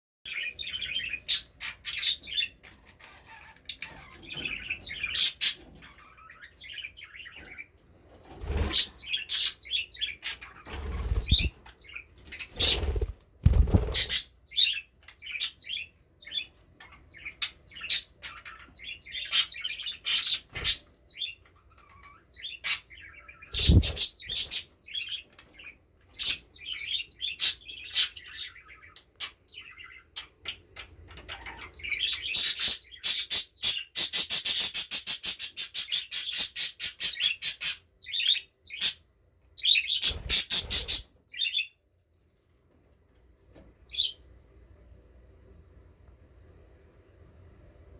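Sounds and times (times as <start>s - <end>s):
budgerigars chirping: 0.3s - 7.7s, 8.5s - 41.7s
wing flapping: 10.7s - 11.5s, 12.6s - 14.2s.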